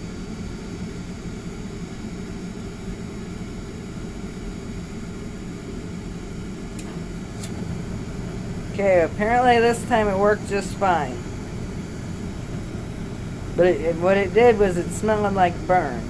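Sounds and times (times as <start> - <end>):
furnace rumbling whoosh: 5.7 - 16.0.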